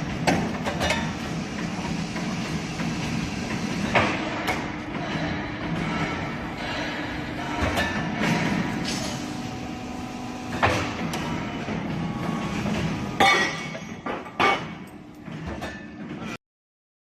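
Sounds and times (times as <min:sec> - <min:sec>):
machine mechanical hum: 0:00.0 - 0:16.4.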